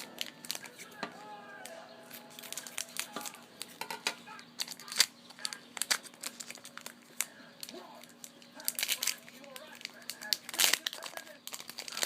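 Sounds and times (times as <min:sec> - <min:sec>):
card wrapper crinkling: 0:00.0 - 0:12.0.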